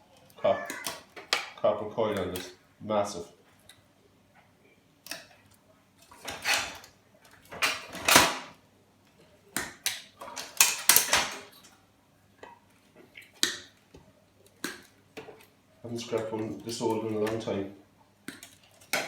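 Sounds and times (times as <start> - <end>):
monitor parts knocking and scraping: 6.0 - 8.5.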